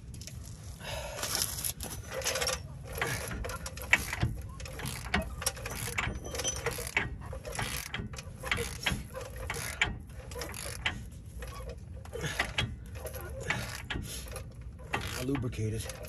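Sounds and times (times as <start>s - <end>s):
hand ratchet clicking: 1.3s - 16.0s.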